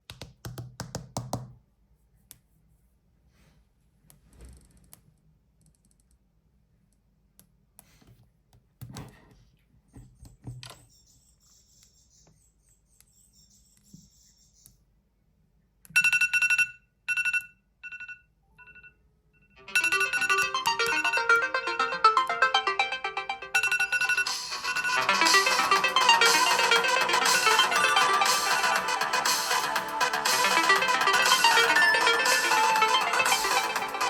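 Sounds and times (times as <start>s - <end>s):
melodic smartphone ringtone: 19.6s - 34.0s.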